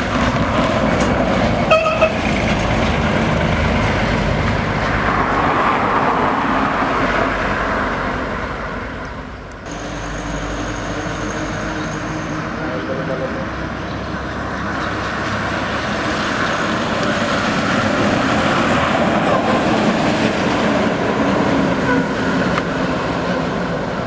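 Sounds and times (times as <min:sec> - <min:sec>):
heavy vehicle passing at speed: 0:00.0 - 0:24.0
steady engine hum: 0:00.0 - 0:24.0
vehicle horn toot: 0:01.7 - 0:02.4.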